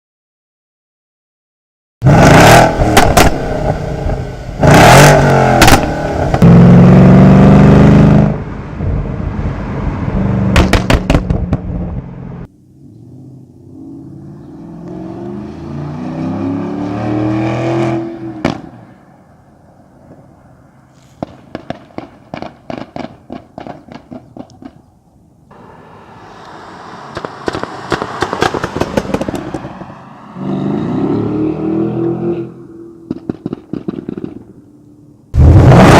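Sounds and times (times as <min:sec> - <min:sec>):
car engine revving: 0:02.0 - 0:11.2, 0:12.2 - 0:18.9, 0:25.5 - 0:34.5, 0:35.4 - 0:35.9
exhaust pops and crackles: 0:03.0 - 0:03.5, 0:05.6 - 0:06.5, 0:10.5 - 0:12.1, 0:21.2 - 0:24.8, 0:27.1 - 0:29.7, 0:33.1 - 0:34.6.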